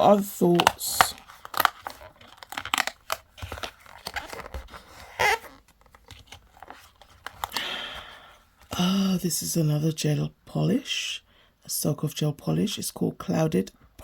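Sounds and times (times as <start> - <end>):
cardboard and paper tearing: 0.0 - 7.5.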